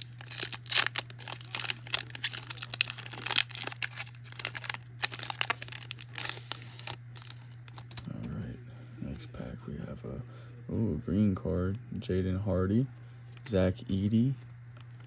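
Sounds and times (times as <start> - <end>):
wrapper crinkling and tearing: 0.0 - 8.3
steady low hum: 0.0 - 15.0.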